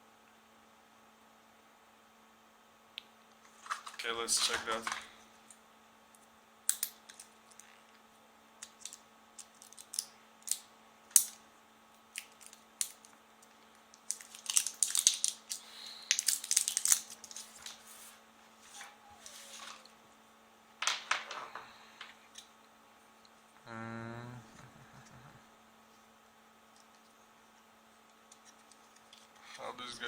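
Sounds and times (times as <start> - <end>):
crinkly plastic rustling and scraping: 3.5 - 5.1, 12.2 - 19.9.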